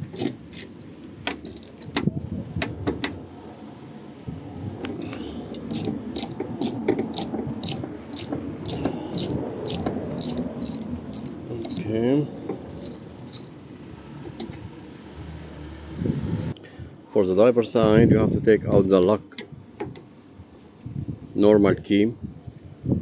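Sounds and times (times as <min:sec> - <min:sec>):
low handling rumble: 0:00.0 - 0:16.6
metal tools clinking: 0:01.4 - 0:02.0, 0:05.0 - 0:13.6.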